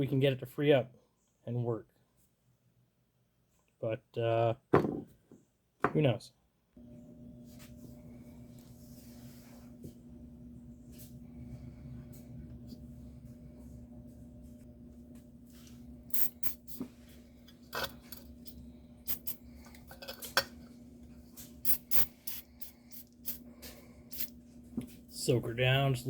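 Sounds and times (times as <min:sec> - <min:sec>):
steady low hum: 0:06.8 - 0:26.0.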